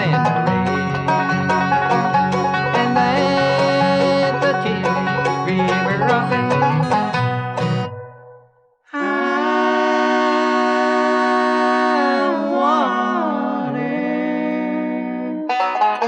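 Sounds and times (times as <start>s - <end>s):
banjo picking: 0.0s - 16.0s
unaccompanied vocal harmony: 8.9s - 15.5s.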